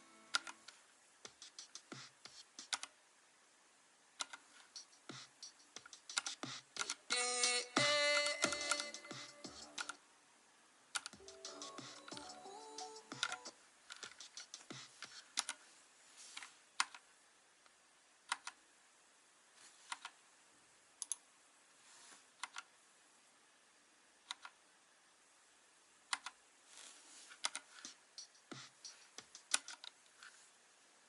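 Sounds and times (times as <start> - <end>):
mechanical keyboard typing: 0.3 - 0.6, 1.3 - 2.9, 4.2 - 4.4, 5.8 - 7.1, 8.2 - 9.1, 9.7 - 10.0, 13.0 - 14.6, 29.2 - 29.9.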